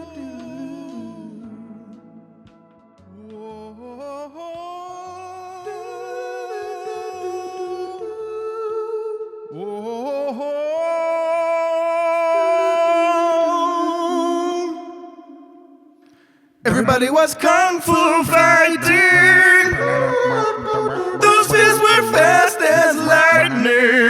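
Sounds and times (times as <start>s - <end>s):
person singing long notes: 16.7s - 24.0s.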